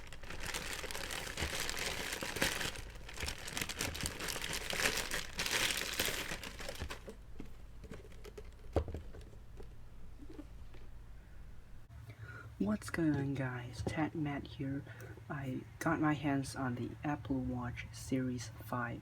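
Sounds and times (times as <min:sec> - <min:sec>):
packaging crinkling: 0:00.0 - 0:11.0.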